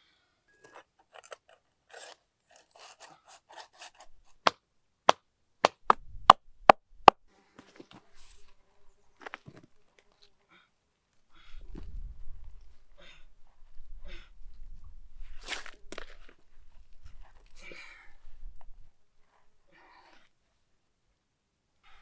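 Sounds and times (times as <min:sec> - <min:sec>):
scraping and rustling: 0:00.6 - 0:04.4.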